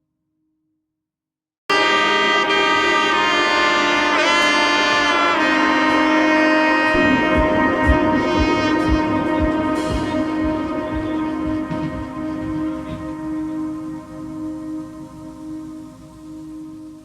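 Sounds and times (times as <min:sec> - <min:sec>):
melody over sustained chords: 0:01.7 - 0:17.0
steady drum beat: 0:06.9 - 0:13.2.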